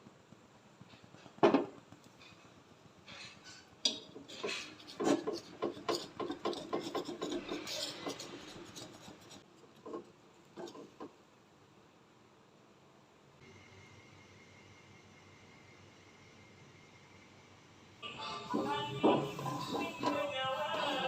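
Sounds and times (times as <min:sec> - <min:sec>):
utensil scraping and knocking bowl: 0:01.3 - 0:11.2, 0:18.5 - 0:21.0.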